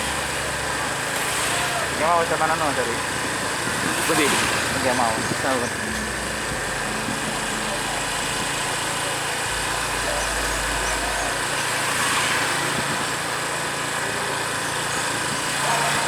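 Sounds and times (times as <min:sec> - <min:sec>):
engine running: 0:00.0 - 0:16.0
low hum: 0:04.5 - 0:12.9.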